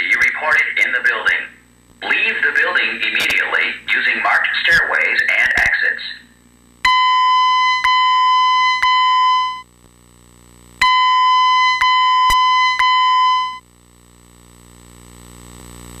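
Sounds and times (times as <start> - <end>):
high electronic alarm beeps: 6.9 - 9.7, 10.8 - 13.6.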